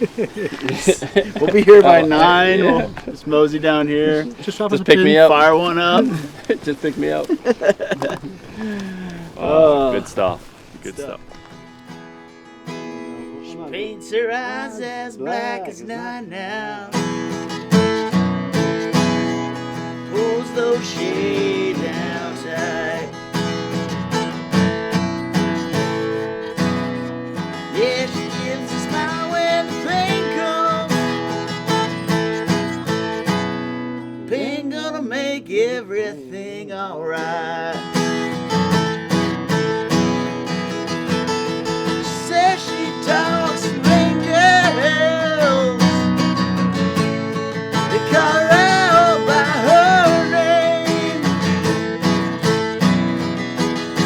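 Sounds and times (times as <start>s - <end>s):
strummed acoustic guitar: 0.0s - 54.0s
person singing: 13.3s - 17.1s, 20.0s - 23.2s, 27.7s - 31.2s, 41.9s - 46.2s, 47.7s - 51.8s.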